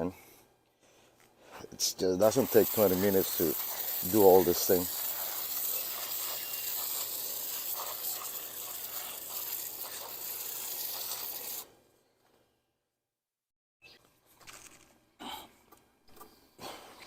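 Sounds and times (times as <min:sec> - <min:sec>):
foaming cleaner hissing and crackling: 0:01.9 - 0:11.6.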